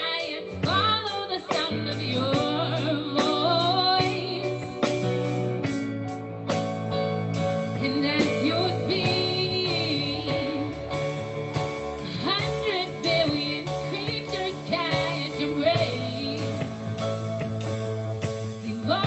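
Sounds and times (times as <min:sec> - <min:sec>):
person singing with vibrato: 0:00.0 - 0:05.0, 0:07.7 - 0:11.2, 0:12.0 - 0:17.1, 0:18.6 - 0:19.0
sustained instrumental chords: 0:02.7 - 0:19.0.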